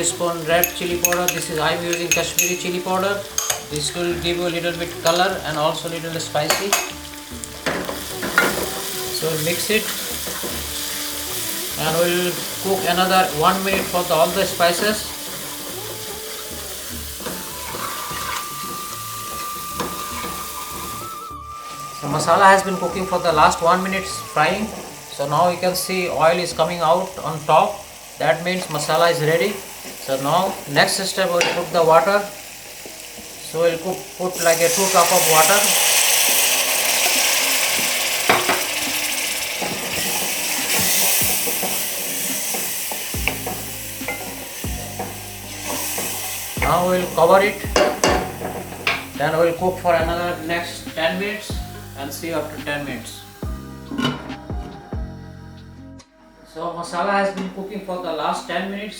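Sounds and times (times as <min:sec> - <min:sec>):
food sizzling in oil: 0:00.0 - 0:54.2
spoon knocking against pan: 0:00.6 - 0:03.8, 0:06.5 - 0:08.9, 0:39.6 - 0:49.2.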